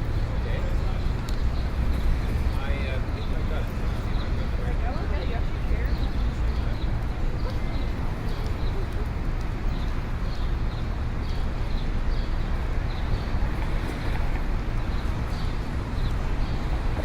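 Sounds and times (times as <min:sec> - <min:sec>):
low rumble of traffic: 0:00.0 - 0:17.0.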